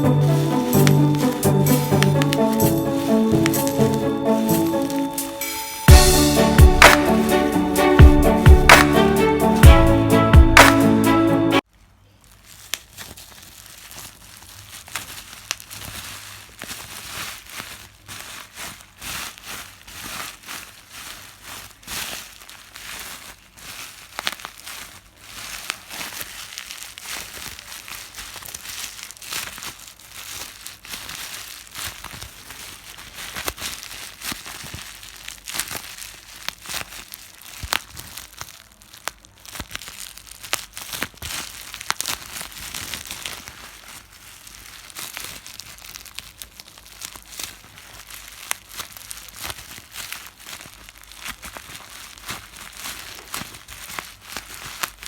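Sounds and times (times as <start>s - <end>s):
bubble wrap crinkling and popping: 0.0s - 7.8s, 11.6s - 55.0s.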